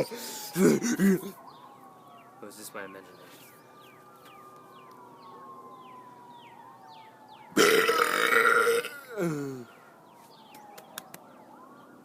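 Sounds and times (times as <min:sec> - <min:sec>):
man burping loudly: 0:07.6 - 0:09.6.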